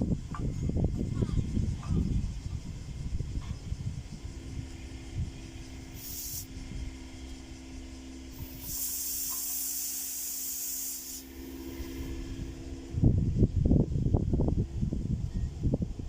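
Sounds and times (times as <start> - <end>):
steady low hum: 0.0 - 16.0
refrigerant gas hissing: 4.0 - 12.9.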